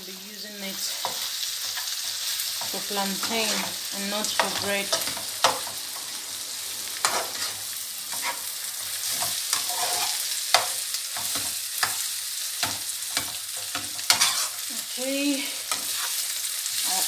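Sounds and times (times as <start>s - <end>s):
egg sizzling in a frying pan: 0.0s - 17.0s
spatula tapping and scraping pan: 1.0s - 5.8s, 9.0s - 14.6s, 15.7s - 16.2s.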